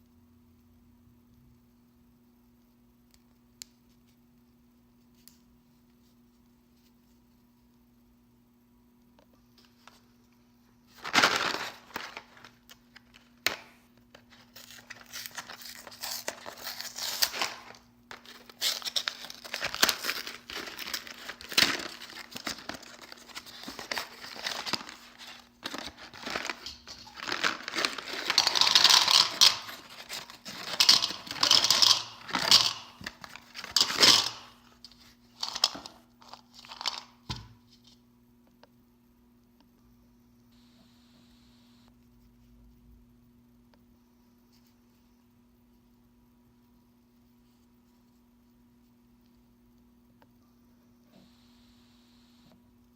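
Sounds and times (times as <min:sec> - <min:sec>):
candy wrapper crinkling and tearing: 0:11.0 - 0:13.3, 0:14.2 - 0:37.2.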